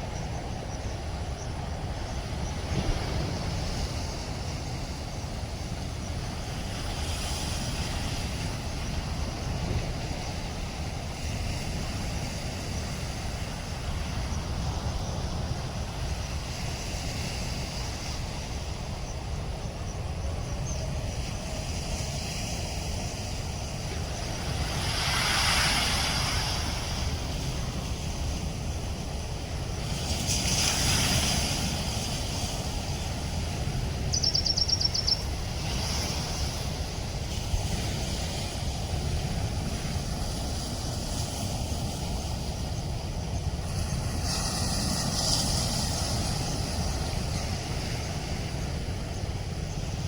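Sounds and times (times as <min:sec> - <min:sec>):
floodwater rushing roar: 0:18.7 - 0:49.6.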